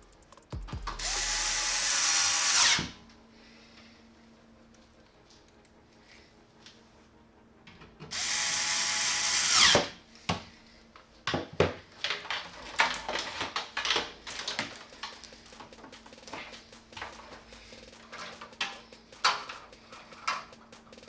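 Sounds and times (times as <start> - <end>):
electric screwdriver running: 0.9 - 2.9, 8.1 - 9.9
parts being handled: 12.0 - 21.0.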